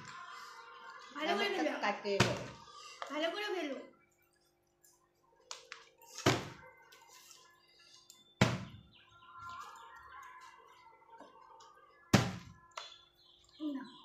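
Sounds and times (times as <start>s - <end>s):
bottle landing with a thud: 6.2s - 6.6s, 8.4s - 8.8s, 12.2s - 12.5s.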